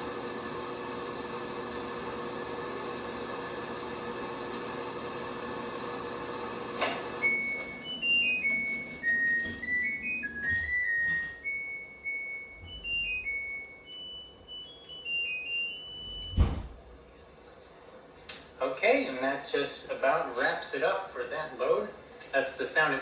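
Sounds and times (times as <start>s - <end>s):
washing machine hum: 0.0s - 10.8s
washer beeping melody: 0.0s - 16.5s.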